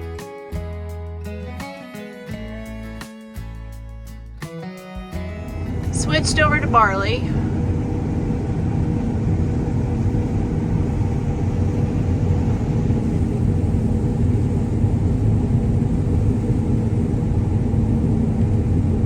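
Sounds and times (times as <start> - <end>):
combine harvester engine drone: 5.2 - 19.0.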